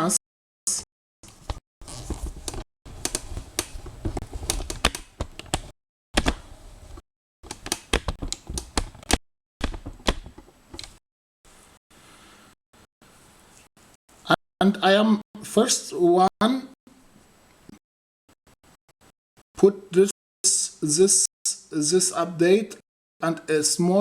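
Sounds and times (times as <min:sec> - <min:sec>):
sharp clicks and taps: 0:01.2 - 0:11.0.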